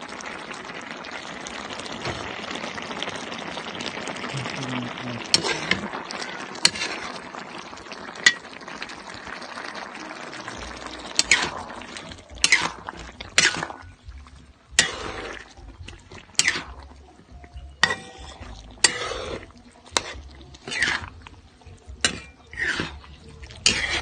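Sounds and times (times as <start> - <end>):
wet liquid stirring: 1.6 - 24.0
metal utensil clinking on pan: 12.4 - 13.9, 17.8 - 21.1, 21.9 - 23.0, 23.6 - 24.0.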